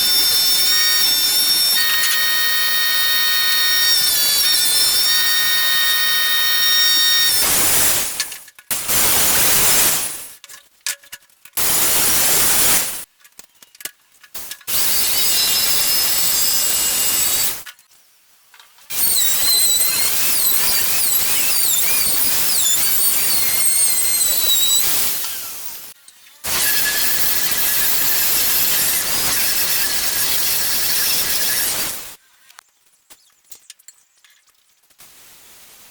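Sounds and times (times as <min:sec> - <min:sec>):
power tool working wood: 0:00.0 - 0:07.9, 0:14.7 - 0:17.6, 0:18.9 - 0:32.0.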